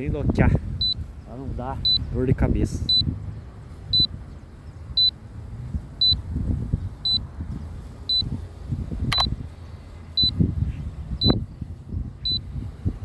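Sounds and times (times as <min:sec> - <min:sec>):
wind rumble on microphone: 0:00.0 - 0:13.0
short high beeps: 0:01.8 - 0:02.0, 0:09.1 - 0:09.3.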